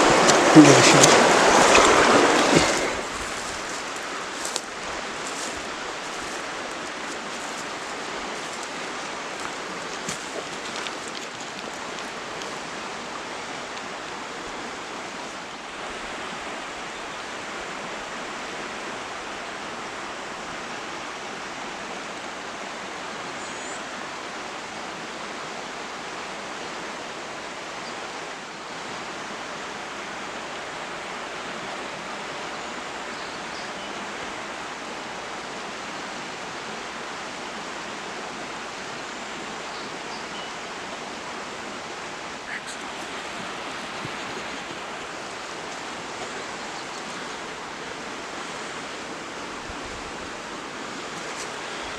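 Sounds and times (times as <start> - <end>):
creek water rushing: 0.0 - 51.9.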